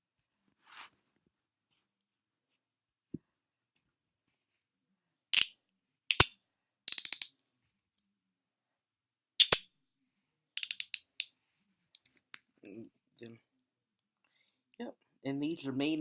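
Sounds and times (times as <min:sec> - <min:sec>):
handcuff metal clicks: 0:06.1 - 0:06.3, 0:06.9 - 0:07.3, 0:09.4 - 0:09.6, 0:10.6 - 0:11.3
handcuff ratchet clicking: 0:06.1 - 0:06.3, 0:06.9 - 0:07.3, 0:09.4 - 0:09.6, 0:10.6 - 0:11.3.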